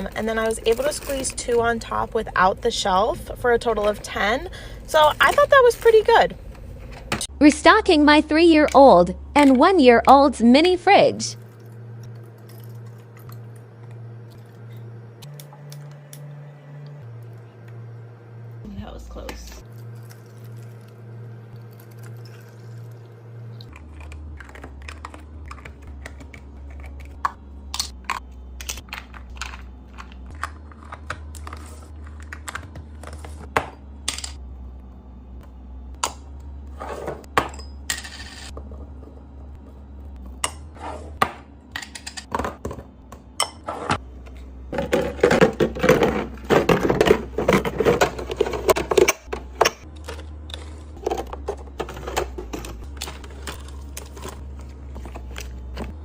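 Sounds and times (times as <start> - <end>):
fridge hum: 0.0 - 56.0.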